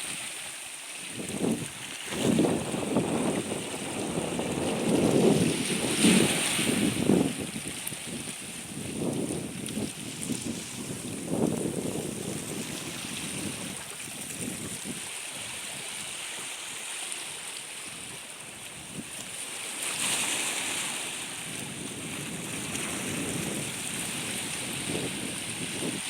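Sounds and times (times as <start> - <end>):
wind buffeting microphone: 1.1 - 16.2, 20.7 - 26.0.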